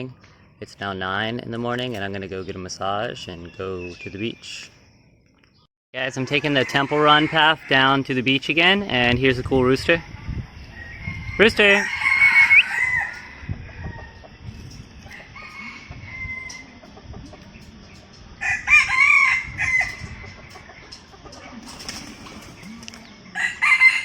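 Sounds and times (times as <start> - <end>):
rooster crowing: 6.4 - 7.9, 10.7 - 14.3, 15.0 - 16.9, 18.4 - 20.4, 23.3 - 24.0.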